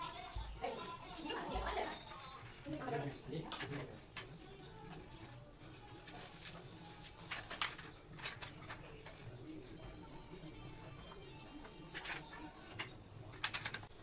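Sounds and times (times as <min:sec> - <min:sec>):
bike parts clicking and knocking: 0:11.9 - 0:13.9.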